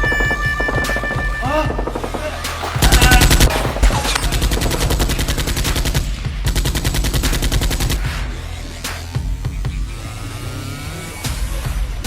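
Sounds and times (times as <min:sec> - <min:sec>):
rapid machine-gun fire: 0:01.8 - 0:08.2.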